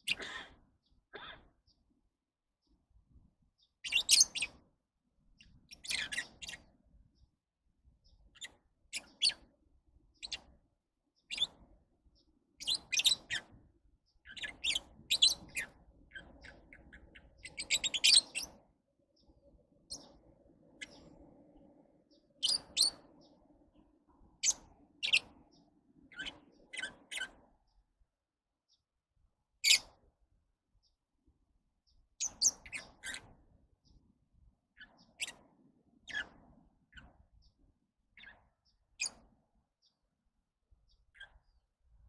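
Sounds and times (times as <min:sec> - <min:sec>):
lovebirds chirping: 0:03.6 - 0:04.6, 0:05.4 - 0:07.3, 0:10.1 - 0:10.6, 0:11.2 - 0:27.9, 0:31.9 - 0:34.1, 0:34.7 - 0:40.0, 0:40.7 - 0:41.7.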